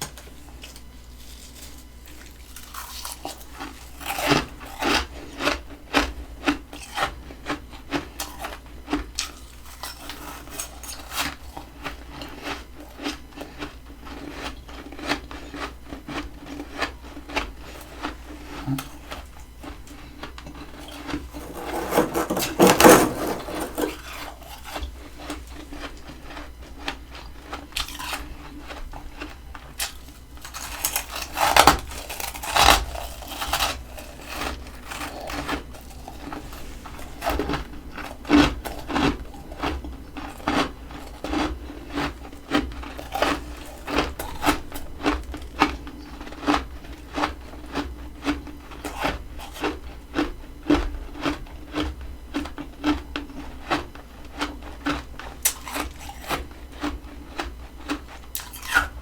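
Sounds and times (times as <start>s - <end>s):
freezer frost crunching: 0.1s - 5.5s, 19.8s - 39.5s.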